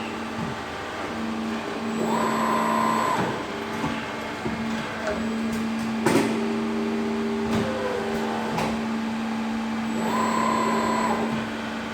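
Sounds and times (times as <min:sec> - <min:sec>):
machine motor hum: 0:00.0 - 0:11.9
machine clunks and knocks: 0:03.2 - 0:06.5.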